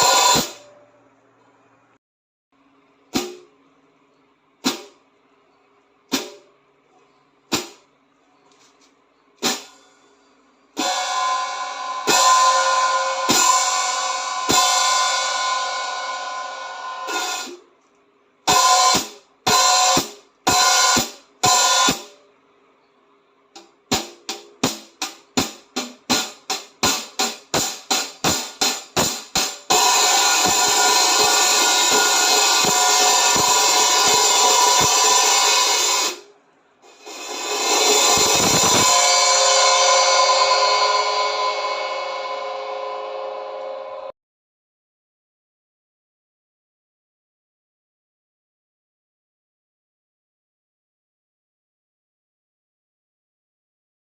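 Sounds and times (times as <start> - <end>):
hi-hat strikes: 0.0 - 0.7, 3.1 - 4.0, 4.6 - 5.4, 6.1 - 6.7, 7.5 - 8.0, 9.3 - 17.7, 18.5 - 22.5, 23.5 - 43.6.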